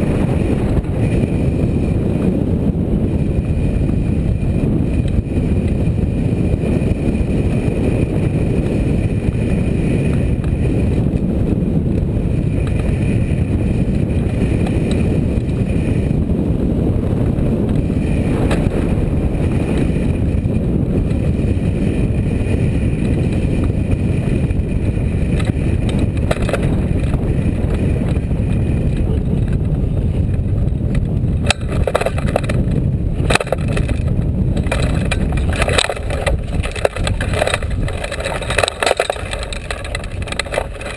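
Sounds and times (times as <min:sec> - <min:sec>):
wind buffeting microphone: 0:00.0 - 0:40.9
knocks and rustles: 0:25.4 - 0:28.3, 0:28.9 - 0:40.9.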